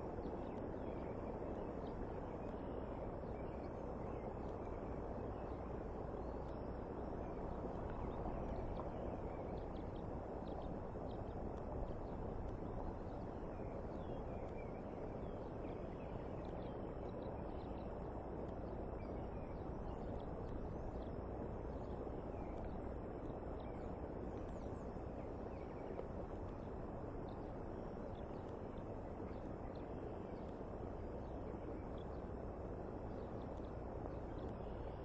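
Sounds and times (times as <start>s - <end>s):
outdoor background noise: 0.0s - 35.0s
faint bird chirps: 33.0s - 35.0s.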